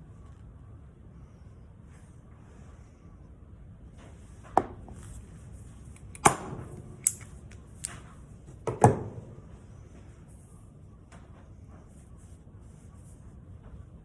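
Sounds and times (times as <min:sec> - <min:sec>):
hard parts knocking and clicking: 0:06.0 - 0:08.0.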